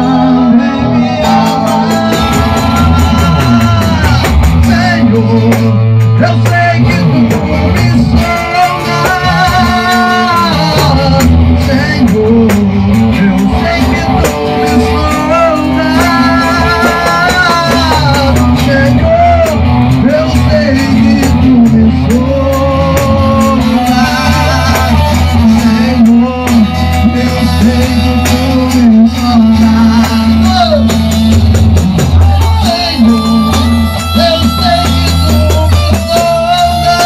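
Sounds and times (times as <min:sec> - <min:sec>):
band playing a worship song: 0:00.0 - 0:37.0
wavering lead melody: 0:08.0 - 0:37.0.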